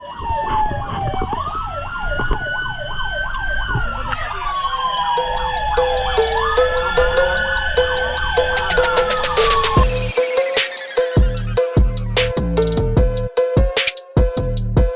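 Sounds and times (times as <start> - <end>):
siren yelping: 0.0 - 12.5
siren wailing: 0.0 - 12.6
short low siren tone: 4.0 - 12.1.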